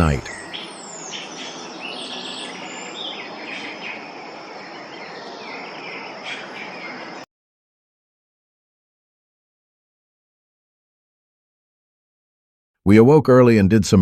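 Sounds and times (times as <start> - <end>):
insects buzzing: 0.0 - 7.2
birds chirping: 0.0 - 7.3.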